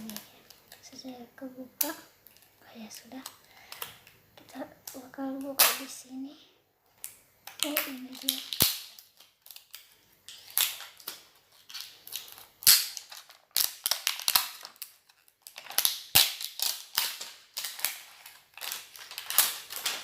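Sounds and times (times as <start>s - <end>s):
plastic wrapping crinkling: 0.0s - 6.0s, 6.8s - 20.0s.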